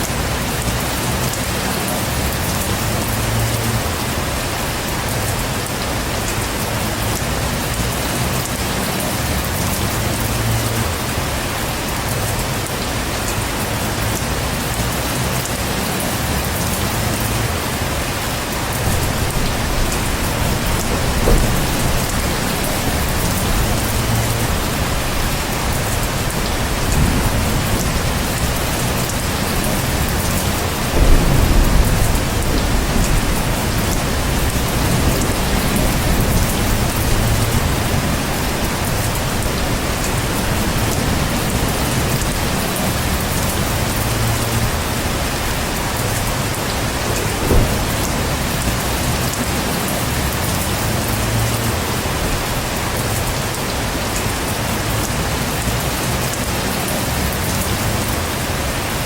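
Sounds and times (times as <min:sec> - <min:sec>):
heavy rain: 0:00.0 - 0:59.0
low thunder rumble: 0:18.7 - 0:53.5.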